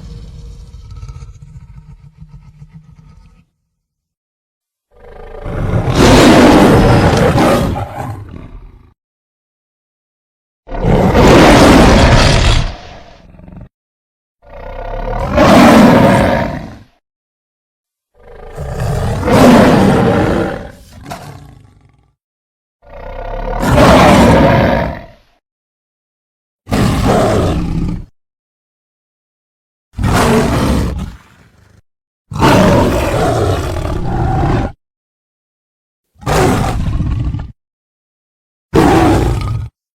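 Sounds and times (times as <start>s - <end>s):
big cat roars: 0.0s - 3.5s, 4.9s - 9.0s, 10.7s - 13.7s, 14.4s - 17.0s, 18.2s - 22.2s, 22.8s - 25.4s, 26.7s - 28.1s, 30.0s - 34.8s, 36.2s - 37.6s, 38.8s - 39.8s.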